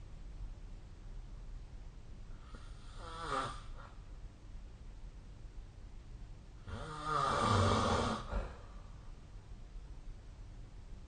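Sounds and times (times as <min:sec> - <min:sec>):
quiet breathing: 0:02.2 - 0:04.2, 0:06.6 - 0:09.3
person snoring: 0:02.4 - 0:03.9, 0:06.7 - 0:08.7.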